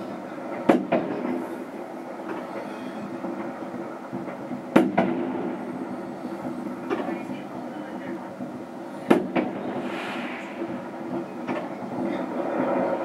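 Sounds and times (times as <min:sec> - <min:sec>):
steady background rumble: 0:05.5 - 0:13.0.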